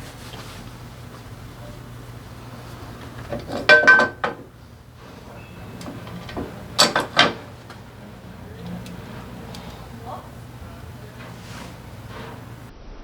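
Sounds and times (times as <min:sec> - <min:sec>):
metal tools clinking and rattling: 0:02.6 - 0:12.7.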